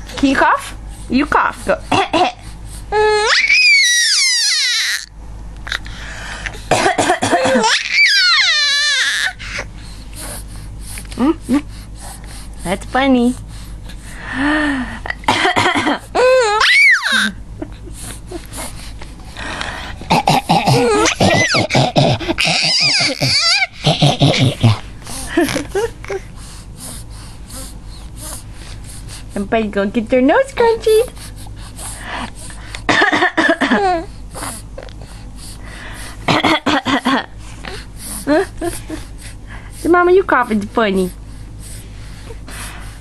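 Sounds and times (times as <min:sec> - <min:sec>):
woman coughing: 0:01.8 - 0:02.4, 0:06.7 - 0:07.8, 0:15.2 - 0:16.1, 0:20.1 - 0:23.2, 0:23.8 - 0:25.9, 0:32.9 - 0:34.0, 0:36.3 - 0:37.3
child laughing with squeals: 0:03.2 - 0:05.0, 0:07.6 - 0:09.3, 0:16.2 - 0:17.4, 0:20.8 - 0:21.8, 0:22.4 - 0:23.8.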